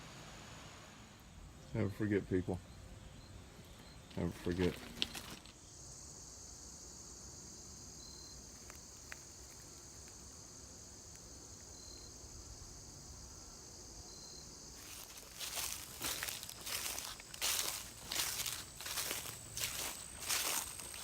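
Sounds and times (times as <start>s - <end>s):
high-pitched insect chorus: 1.3s - 21.0s
faint chirps: 11.6s - 12.2s.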